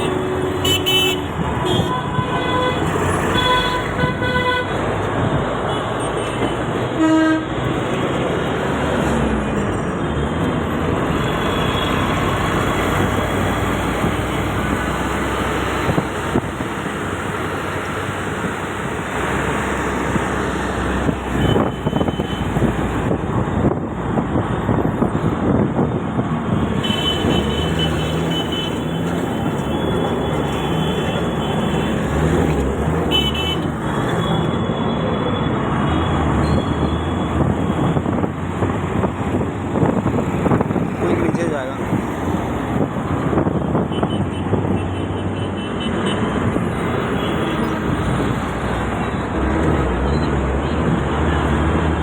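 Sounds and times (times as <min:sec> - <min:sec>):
train rumbling on track: 0:00.0 - 0:34.6.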